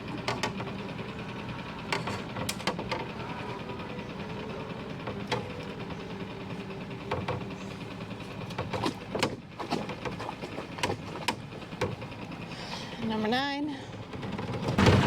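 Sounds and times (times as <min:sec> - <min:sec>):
small boat motor running: 0:00.0 - 0:15.0
sharp knocks and clunks: 0:14.8 - 0:15.0.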